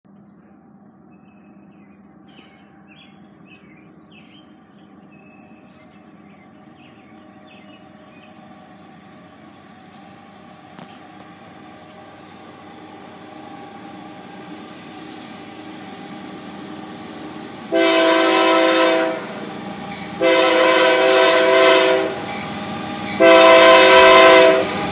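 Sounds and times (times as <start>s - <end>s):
diesel locomotives rumbling: 0.0s - 24.9s
small birds chirping: 0.2s - 15.2s.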